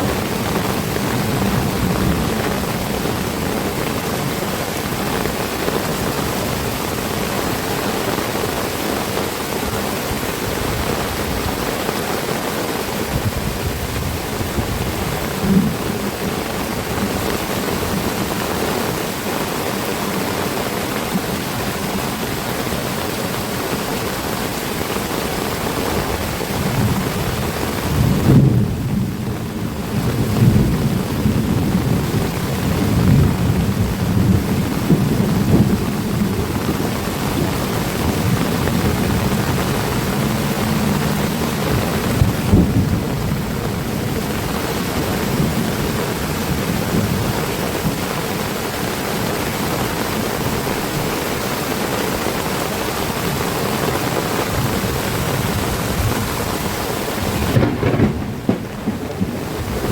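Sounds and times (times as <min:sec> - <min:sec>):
low thunder rumble: 0:00.0 - 0:08.3, 0:13.1 - 0:19.2, 0:25.1 - 0:48.0, 0:54.2 - 0:59.9
heavy rain pouring: 0:00.0 - 0:59.9.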